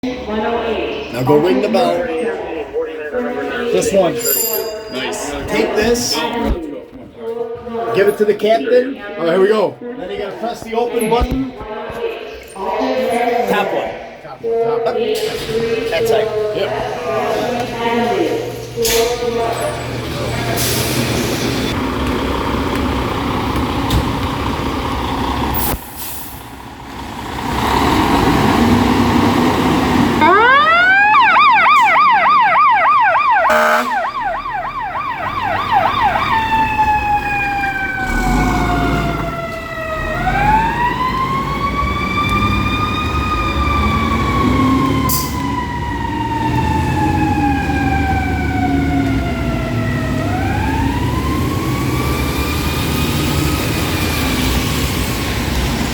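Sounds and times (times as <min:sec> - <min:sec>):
truck engine rumbling: 0:15.2 - 0:55.9
fire engine siren: 0:27.5 - 0:55.9
air horn blast: 0:33.2 - 0:34.4.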